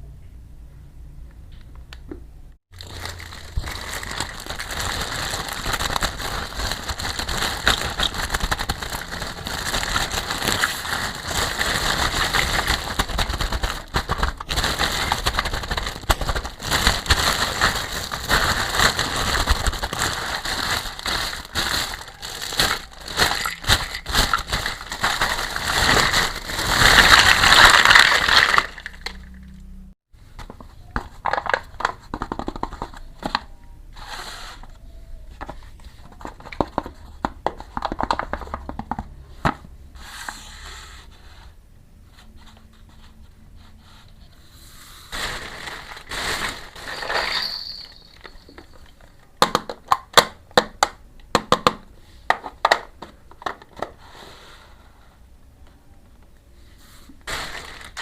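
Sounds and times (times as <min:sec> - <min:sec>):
packaging crinkling: 0:02.8 - 0:29.5, 0:45.1 - 0:50.0, 0:57.2 - 0:58.0.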